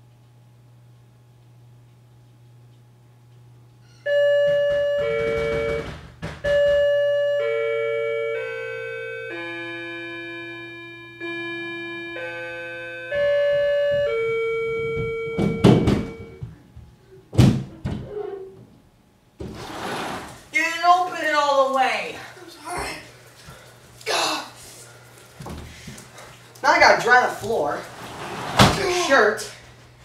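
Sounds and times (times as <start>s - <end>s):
electronic doorbell chime melody: 4.0s - 16.4s
heavy thumps: 13.6s - 18.6s.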